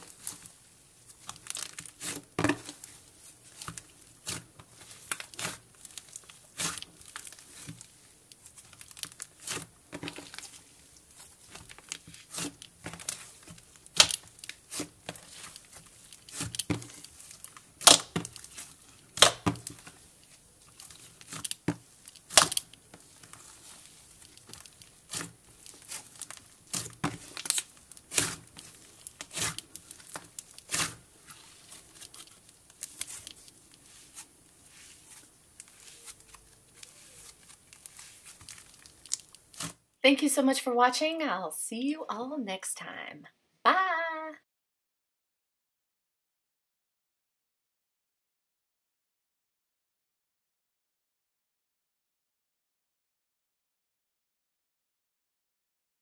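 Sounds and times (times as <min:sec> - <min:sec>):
slime popping and crackling: 0:01.1 - 0:39.8.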